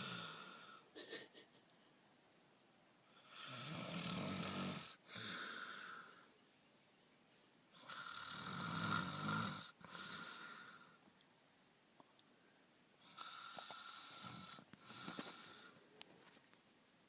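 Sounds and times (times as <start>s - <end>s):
person snoring: 0.0s - 0.8s, 3.2s - 6.2s, 7.8s - 10.9s.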